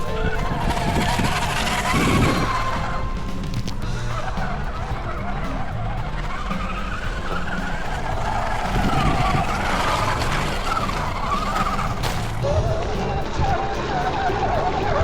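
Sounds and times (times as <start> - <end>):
electric motor whining: 0.0 - 15.0.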